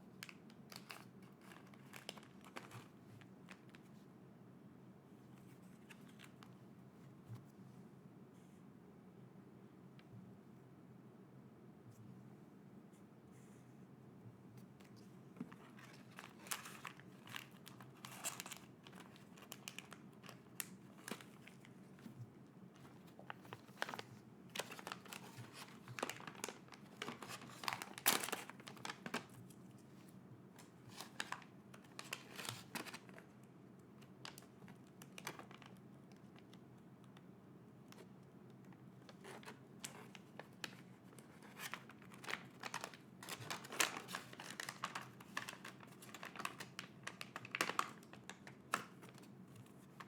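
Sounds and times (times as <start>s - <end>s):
packaging crinkling and tearing: 0.2s - 3.8s, 15.5s - 21.8s, 22.8s - 29.6s, 30.6s - 33.3s, 34.2s - 36.4s, 39.1s - 49.7s.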